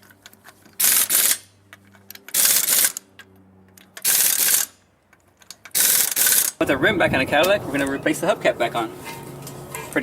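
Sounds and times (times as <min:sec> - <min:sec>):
pneumatic impact wrench hammering: 0:00.7 - 0:01.5, 0:02.3 - 0:03.0, 0:04.0 - 0:04.8, 0:05.7 - 0:06.6.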